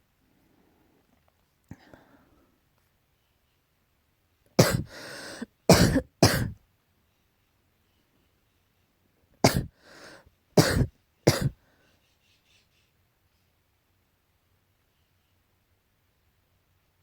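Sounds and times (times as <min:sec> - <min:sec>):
rasping breath: 0:04.6 - 0:05.5, 0:09.5 - 0:11.8
person coughing: 0:04.6 - 0:06.6, 0:09.4 - 0:11.6.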